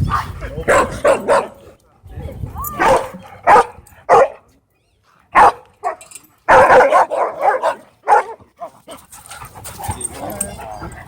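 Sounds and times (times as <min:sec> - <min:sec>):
dog barking: 0:00.7 - 0:01.7, 0:02.8 - 0:04.4, 0:05.4 - 0:08.4.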